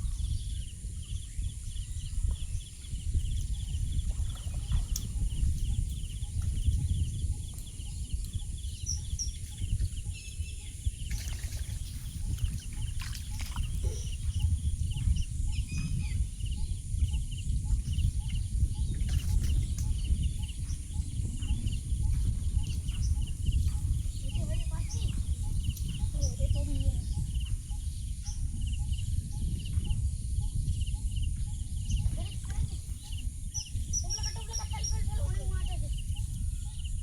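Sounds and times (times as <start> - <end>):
bird chirps: 0.0 - 11.3, 12.8 - 30.0.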